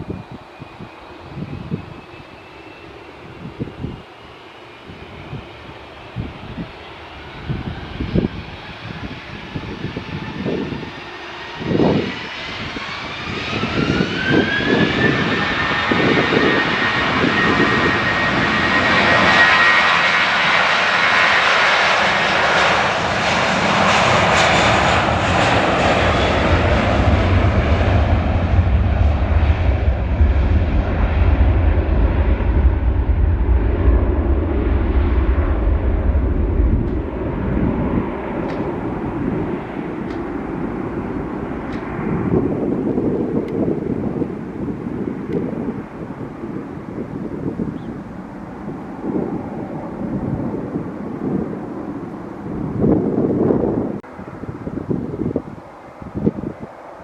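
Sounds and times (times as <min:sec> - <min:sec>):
jet engines spooling up: 0:00.0 - 0:57.0
deep low rumble: 0:22.6 - 0:44.0.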